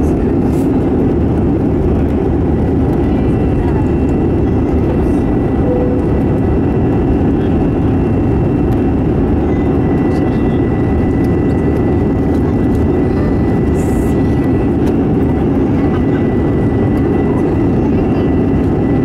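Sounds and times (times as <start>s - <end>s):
jet engine cabin noise: 0.0s - 19.0s
faint high whining tones: 5.6s - 7.3s.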